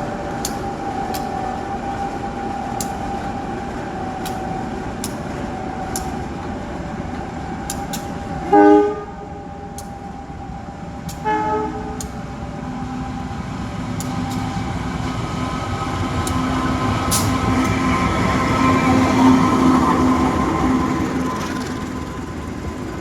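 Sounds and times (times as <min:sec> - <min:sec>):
droning hum: 0:00.0 - 0:23.0
train rumble: 0:00.0 - 0:23.0
train horn blast: 0:08.4 - 0:09.6, 0:11.2 - 0:12.3.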